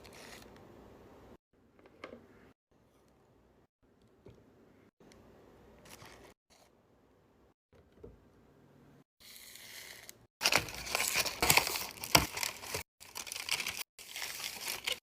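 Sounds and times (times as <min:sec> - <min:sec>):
packaging wrap crinkling: 0:10.4 - 0:15.0.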